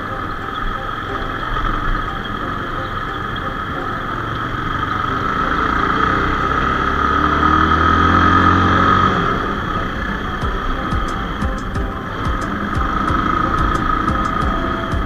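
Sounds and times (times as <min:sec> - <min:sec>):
vehicle engine speeding up: 0:00.9 - 0:15.0.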